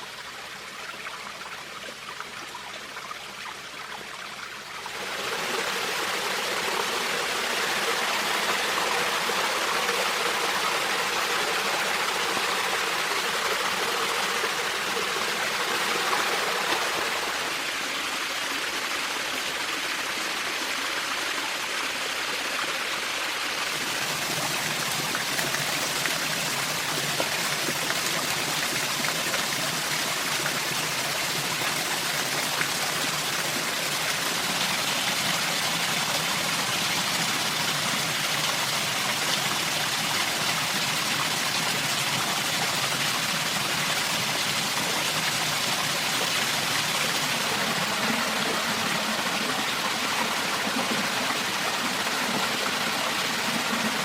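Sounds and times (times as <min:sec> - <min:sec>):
flowing water trickling: 0:23.6 - 0:36.3.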